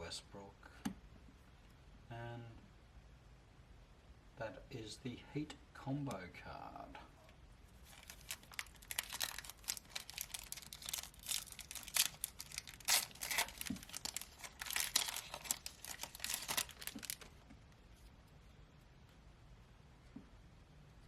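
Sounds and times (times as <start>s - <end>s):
foil wrapper crinkling and tearing: 7.8s - 17.4s.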